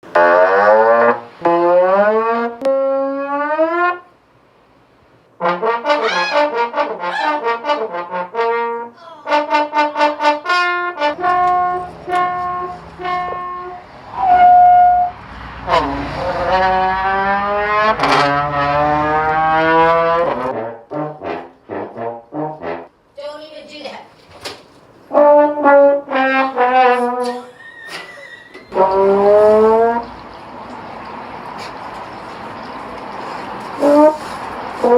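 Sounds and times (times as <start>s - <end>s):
brass notes sliding: 0.0s - 4.1s, 5.4s - 22.9s, 25.1s - 30.1s, 33.8s - 34.9s
comic trombone sound effects: 0.0s - 4.1s, 5.4s - 22.9s, 25.1s - 27.8s, 28.7s - 30.1s, 33.8s - 34.9s.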